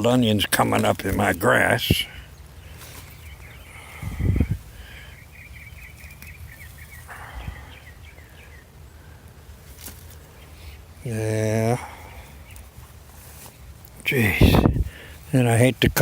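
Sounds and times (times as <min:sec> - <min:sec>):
songbird warbling trill: 0:01.1 - 0:08.7.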